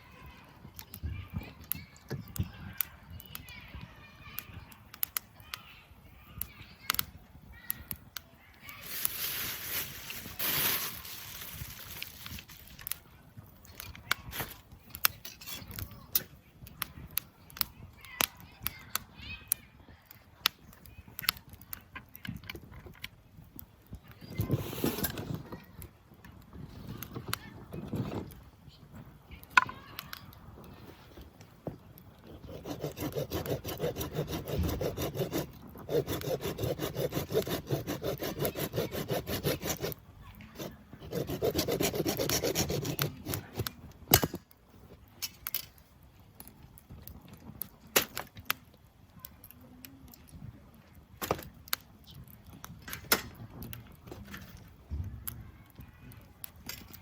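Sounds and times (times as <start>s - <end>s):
campfire crackling and popping: 0.1s - 57.0s
hand saw cutting wood: 32.3s - 40.0s, 40.6s - 43.7s.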